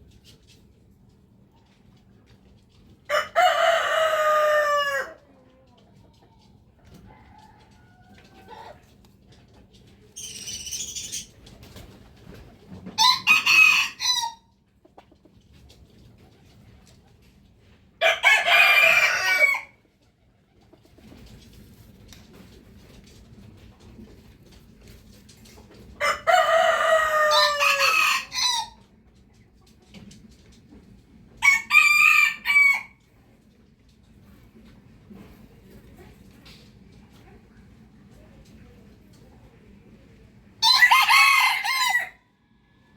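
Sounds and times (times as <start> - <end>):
rooster crowing: 3.1 - 5.2, 13.0 - 14.4, 18.0 - 19.8, 26.0 - 28.8, 31.4 - 33.0, 40.6 - 42.2.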